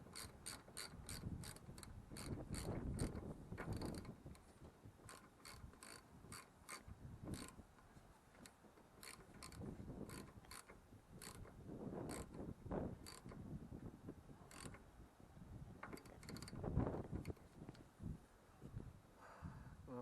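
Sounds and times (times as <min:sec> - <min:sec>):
ratchet wrench clicking: 0:00.1 - 0:04.4, 0:05.1 - 0:07.6, 0:08.4 - 0:12.4, 0:13.0 - 0:13.4, 0:14.5 - 0:14.8, 0:15.8 - 0:16.6.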